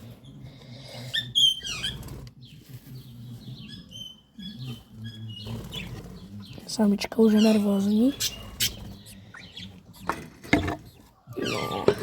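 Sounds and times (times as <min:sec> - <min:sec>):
budgerigars cheeping: 0:03.5 - 0:09.7.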